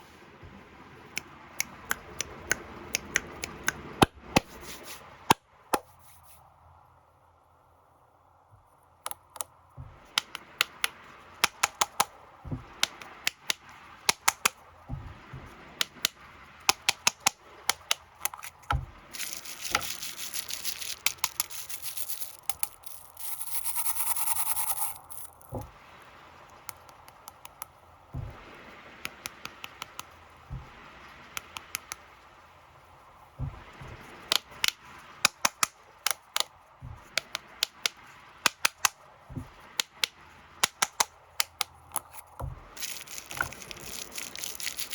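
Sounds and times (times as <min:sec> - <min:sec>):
wrapper rustling rasps: 0:18.2 - 0:25.5, 0:42.8 - 0:44.9
plastic wrappers crinkling: 0:18.2 - 0:25.6, 0:42.8 - 0:44.9.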